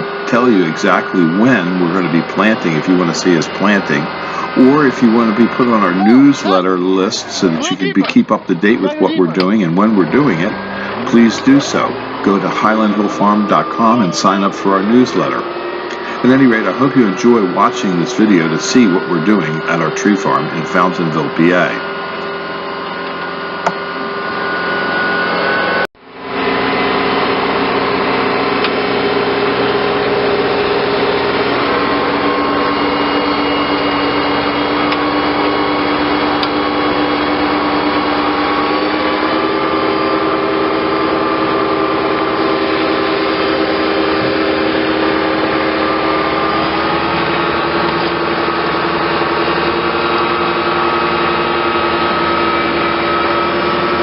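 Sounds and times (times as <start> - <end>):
farm machinery engine running: 0.0 - 54.0.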